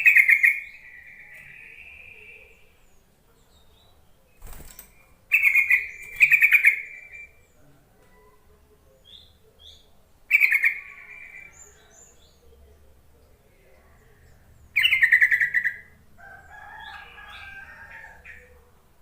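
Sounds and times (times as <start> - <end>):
bird chattering calls: 0.0 - 2.4, 5.3 - 7.2, 10.3 - 11.6, 14.8 - 15.9
faint high bird chirps: 0.0 - 12.8.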